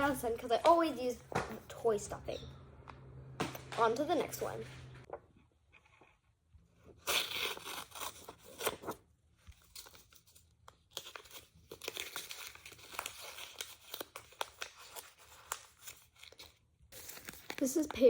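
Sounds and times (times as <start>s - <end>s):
paper crumpling and tearing: 7.0s - 18.0s.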